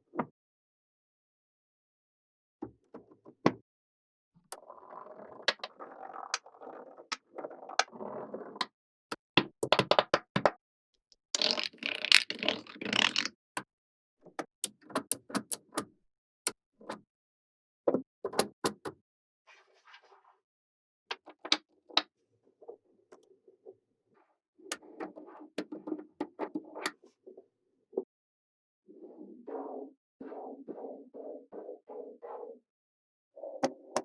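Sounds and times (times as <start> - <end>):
magnetic balls clicking together: 11.4 - 13.3, 14.4 - 15.9
balls rattling and scraping: 11.4 - 13.4.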